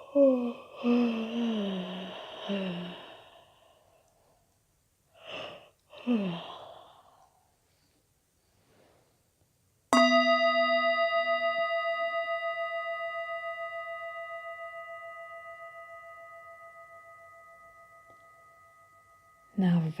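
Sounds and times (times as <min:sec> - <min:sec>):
singing bowl ringing: 0:09.9 - 0:20.0.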